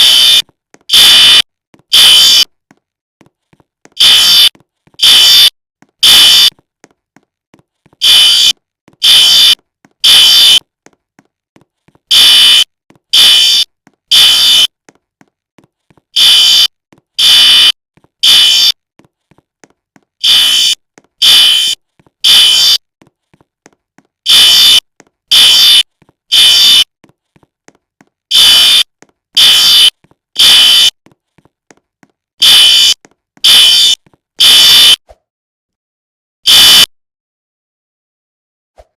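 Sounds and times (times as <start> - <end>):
fire alarm beeps: 0.0 - 2.5, 4.0 - 6.5, 8.0 - 10.6, 12.1 - 14.7, 16.2 - 18.8, 20.2 - 22.8, 24.3 - 26.9, 28.3 - 30.9, 32.4 - 35.0, 36.5 - 36.9.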